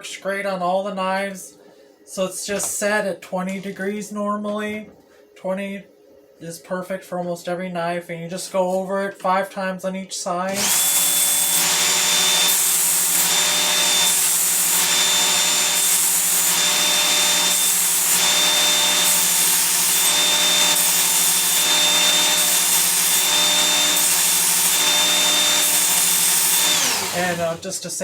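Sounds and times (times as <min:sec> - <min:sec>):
knife sharpener motor whine: 0:10.5 - 0:27.6.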